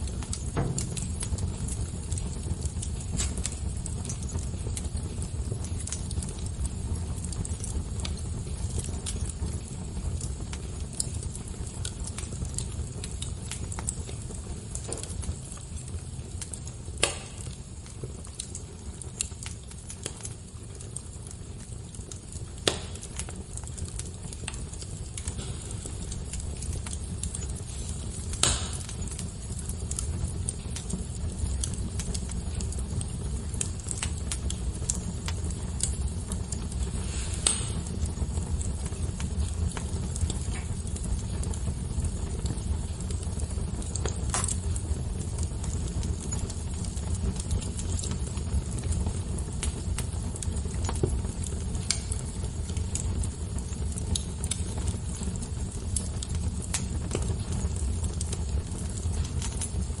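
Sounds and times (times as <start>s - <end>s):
wood fire crackling: 0.0s - 60.0s
loud pops: 17.0s - 17.5s, 22.6s - 23.2s, 28.4s - 29.0s.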